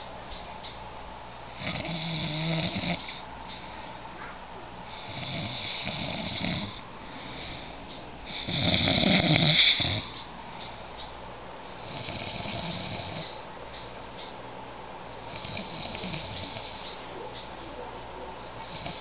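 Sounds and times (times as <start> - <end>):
raspy snoring: 1.6 - 3.2, 4.9 - 6.8, 8.3 - 10.1, 11.8 - 13.4, 15.2 - 17.0, 18.6 - 19.0.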